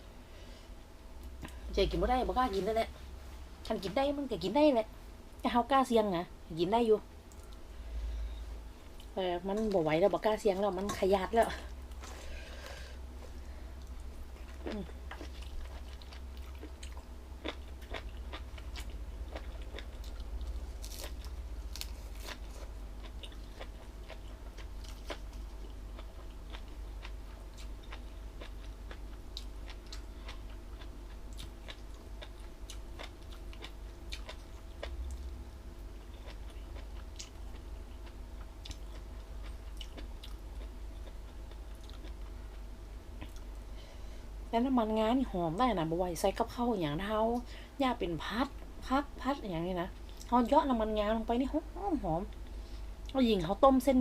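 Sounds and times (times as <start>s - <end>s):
low hum: 0.0s - 54.0s
crisp chewing crunches: 13.8s - 42.6s.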